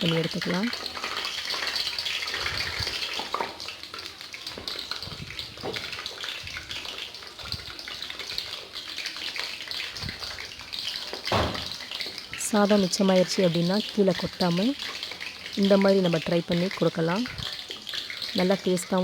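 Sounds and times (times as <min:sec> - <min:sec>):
food sizzling in hot oil: 0:00.0 - 0:19.0.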